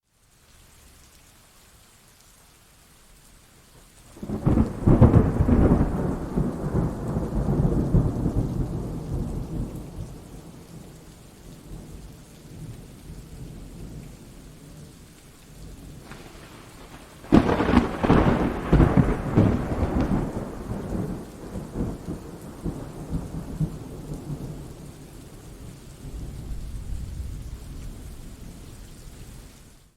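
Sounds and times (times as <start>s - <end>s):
steady rain: 0.0s - 29.9s
thunder rolling: 4.2s - 10.7s, 15.9s - 24.8s, 26.0s - 28.6s
sharp thunder crack: 16.0s - 23.6s.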